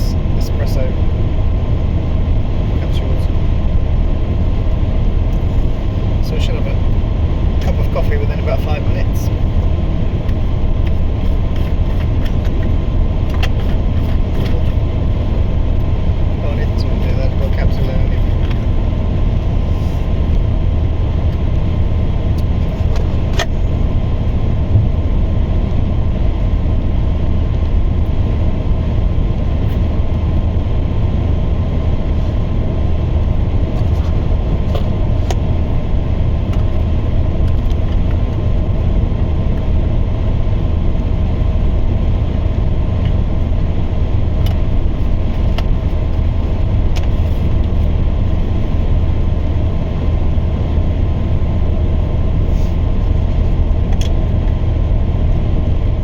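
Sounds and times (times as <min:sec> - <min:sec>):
road and engine rumble: 0:00.0 - 0:56.0.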